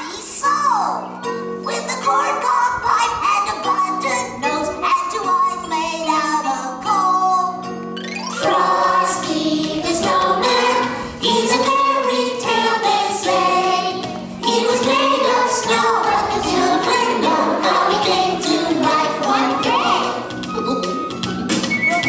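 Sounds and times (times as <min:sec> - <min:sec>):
backing music: 0:07.6 - 0:22.0
voices singing: 0:08.0 - 0:22.0.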